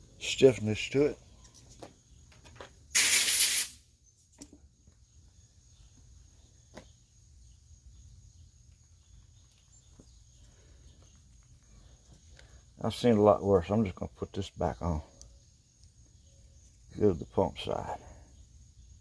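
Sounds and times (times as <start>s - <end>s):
short loud hiss: 2.9s - 3.8s.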